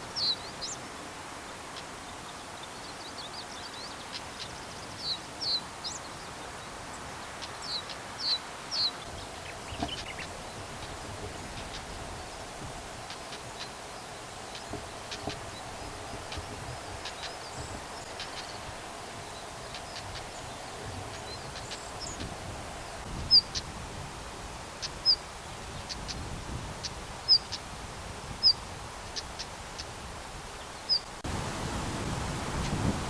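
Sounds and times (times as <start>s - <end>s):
bird clicking tack notes: 14.5s - 18.8s.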